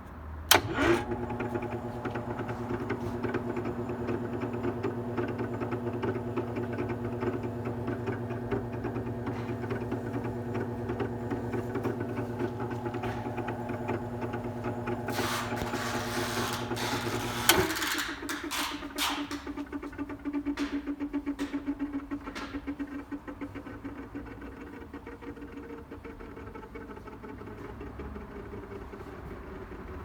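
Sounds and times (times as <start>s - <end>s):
small engine idling: 0.5s - 18.0s.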